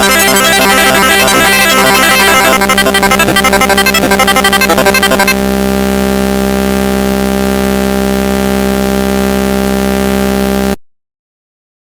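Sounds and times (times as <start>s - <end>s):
electronic drone: 0.0s - 9.2s.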